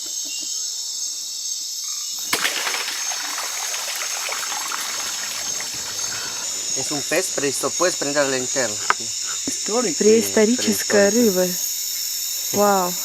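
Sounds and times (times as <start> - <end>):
water splashing and trickling: 2.2 - 7.6
night insects chorus: 2.3 - 13.0.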